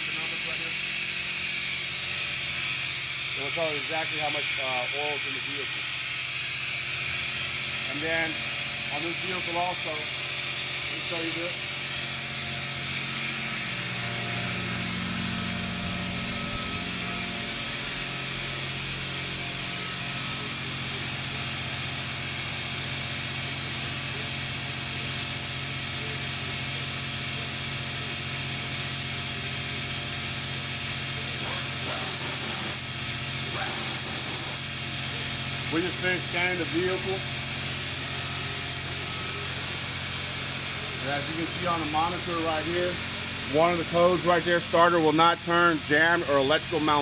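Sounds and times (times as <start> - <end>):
low mechanical hum: 0.0 - 47.0
compressed air hissing: 31.2 - 47.0.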